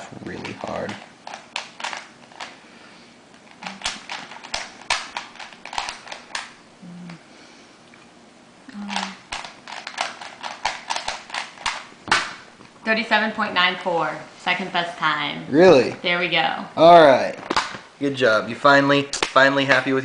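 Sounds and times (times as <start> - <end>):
plastic puzzle cube clicking: 8.8 - 11.8.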